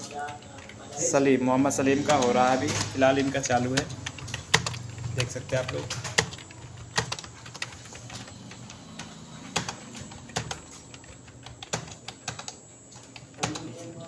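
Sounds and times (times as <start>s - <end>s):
keyboard keys clicking: 2.1s - 13.9s.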